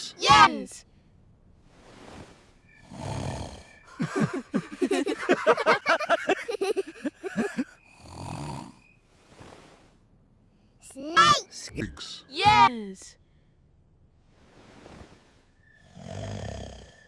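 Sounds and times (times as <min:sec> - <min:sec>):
cartoon snoring: 0:02.9 - 0:04.5, 0:07.0 - 0:08.8, 0:15.8 - 0:17.0.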